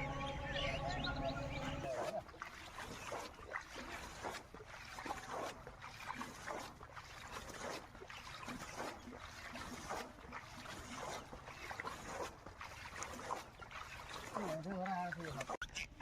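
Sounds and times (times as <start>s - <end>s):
water splashing: 0.0s - 15.9s.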